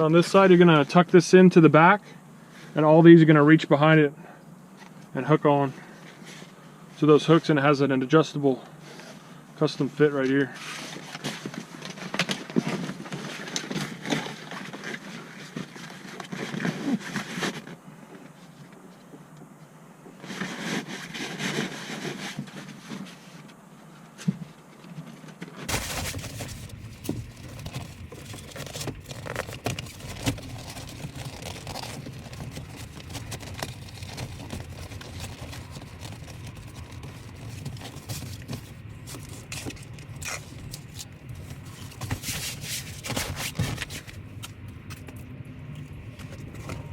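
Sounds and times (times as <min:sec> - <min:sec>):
fabric rustling and scraping: 0:10.4 - 0:19.0, 0:20.1 - 0:45.1.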